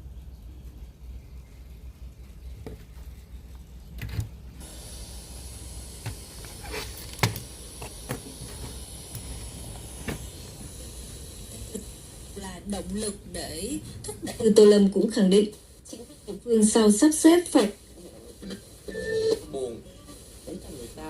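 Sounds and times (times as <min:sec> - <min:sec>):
low hum: 0:00.0 - 0:15.8
high whine: 0:04.6 - 0:14.5
radio static hiss: 0:04.6 - 0:21.0.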